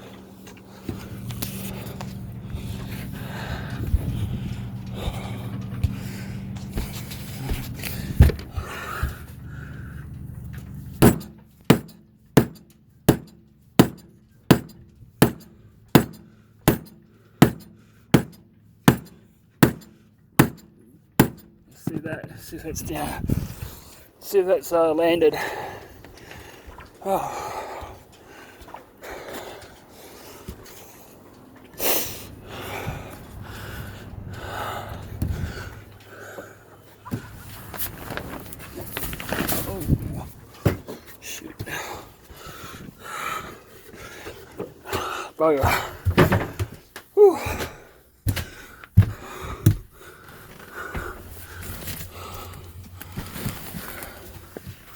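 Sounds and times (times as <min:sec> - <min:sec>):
low steady hum: 0:00.0 - 0:44.8
person breathing hard: 0:00.8 - 0:06.6, 0:07.4 - 0:10.2, 0:25.3 - 0:31.2, 0:31.8 - 0:37.4, 0:41.6 - 0:46.1, 0:47.2 - 0:54.6
mallet striking wooden plug: 0:11.0 - 0:21.5
scattered knocks: 0:11.0 - 0:21.6.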